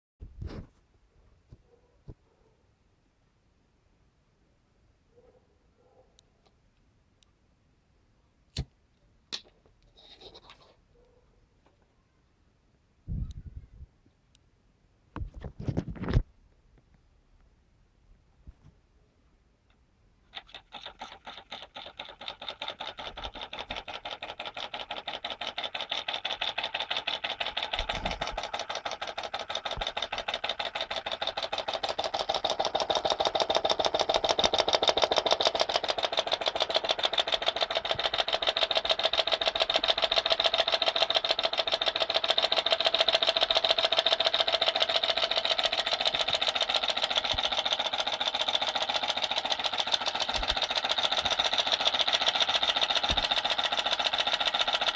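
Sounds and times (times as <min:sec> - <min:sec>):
small engine clattering: 0:20.3 - 0:54.9.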